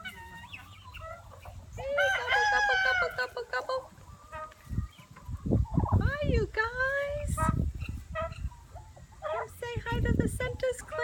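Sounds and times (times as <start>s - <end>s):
chickens clucking and chirping: 0.0s - 11.0s
rooster crowing: 2.0s - 3.2s.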